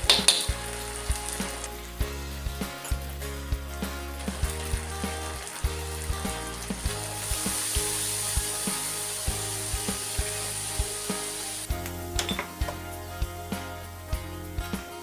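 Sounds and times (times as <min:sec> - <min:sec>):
background music with steady beat: 0:00.0 - 0:15.0
food sizzling in hot oil: 0:00.0 - 0:15.0.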